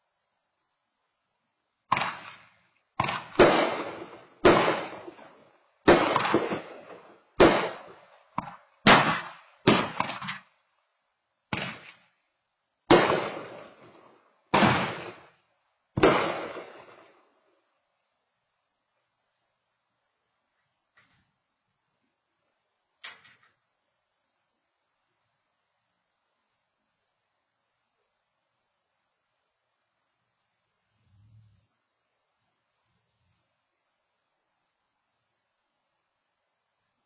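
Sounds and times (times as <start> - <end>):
firework bangs: 1.9 - 10.5, 11.5 - 12.1, 12.9 - 15.3, 16.0 - 17.2.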